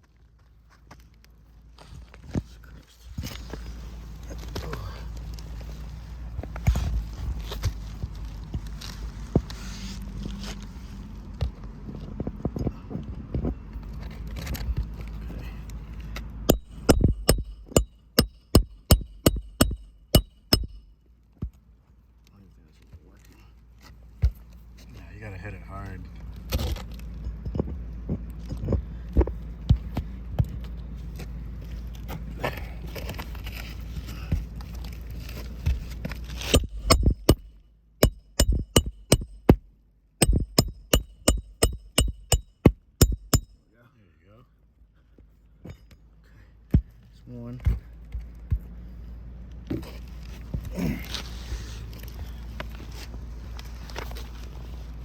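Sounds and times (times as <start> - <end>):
low steady rumble: 0.0 - 55.0
hammer strikes on roof: 16.5 - 20.8, 36.5 - 39.6, 40.2 - 43.5.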